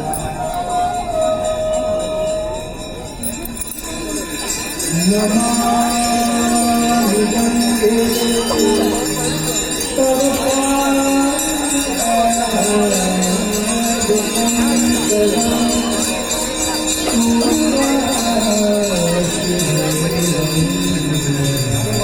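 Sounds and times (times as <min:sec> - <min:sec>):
jingling bells or tambourine: 0:00.0 - 0:22.0
slow melody: 0:00.0 - 0:22.0.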